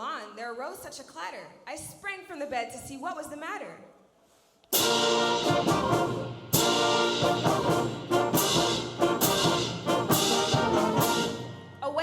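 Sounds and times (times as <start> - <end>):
brass band accented chords: 4.8 - 11.7.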